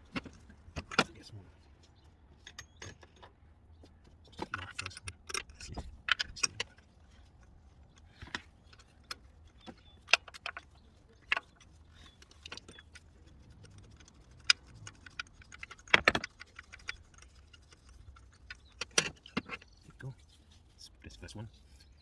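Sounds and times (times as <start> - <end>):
ratchet and socket clicking: 10.0 - 19.6.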